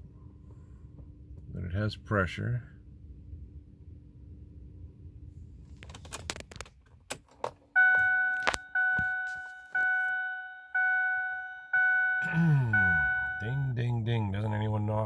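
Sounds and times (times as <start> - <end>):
low steady hum: 0.0 - 15.0
two-tone warning chime: 7.8 - 13.8.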